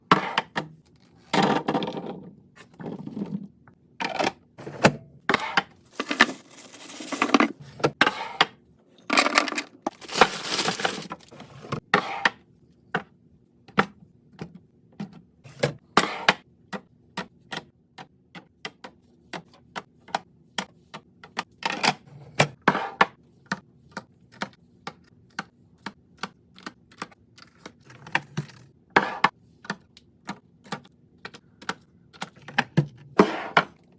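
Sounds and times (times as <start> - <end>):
containers clicking and knocking: 5.9 - 7.6
rustling and scraping: 5.9 - 7.8.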